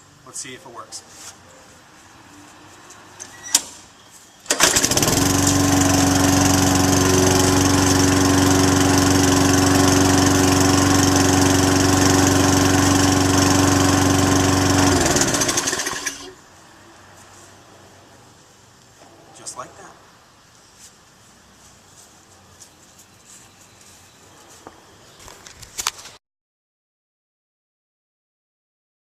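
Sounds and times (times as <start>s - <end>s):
lawnmower engine running: 4.5s - 16.4s.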